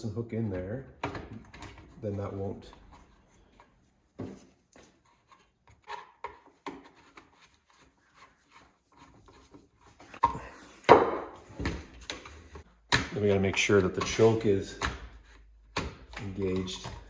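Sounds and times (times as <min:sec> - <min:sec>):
scraping rub: 0:04.8 - 0:10.2.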